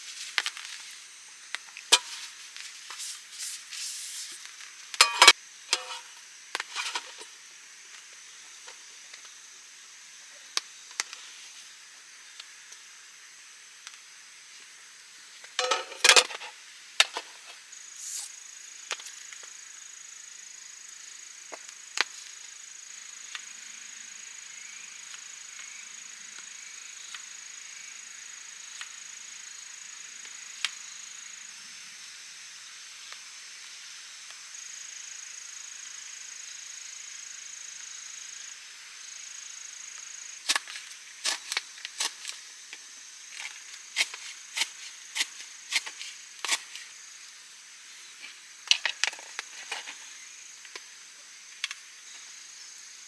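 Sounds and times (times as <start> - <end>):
handling clicks and knocks: 5.0 - 6.1, 15.6 - 16.5
sharp clattering: 5.0 - 6.1, 15.6 - 16.5.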